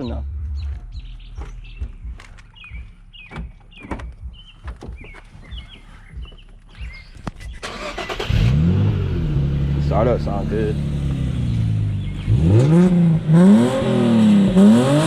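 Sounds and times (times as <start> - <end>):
small birds chirping: 0.0 - 8.2, 9.6 - 13.0
sharp clicks and knocks: 1.3 - 5.4
car engine starter cranking: 7.4 - 8.9
car engine firing: 7.4 - 15.0.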